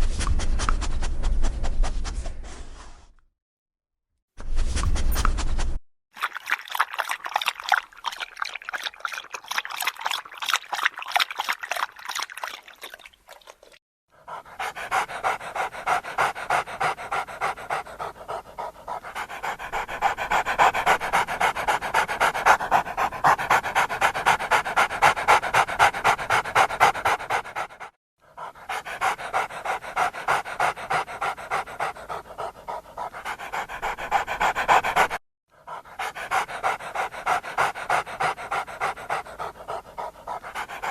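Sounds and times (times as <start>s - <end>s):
dog panting fast: 14.1s - 40.9s.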